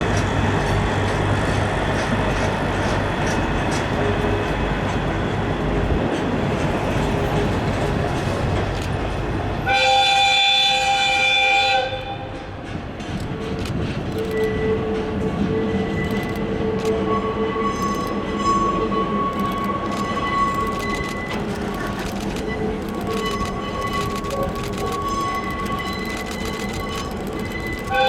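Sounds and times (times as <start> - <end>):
train engine rumble: 0.0 - 28.0
locomotive horn blast: 9.6 - 12.4.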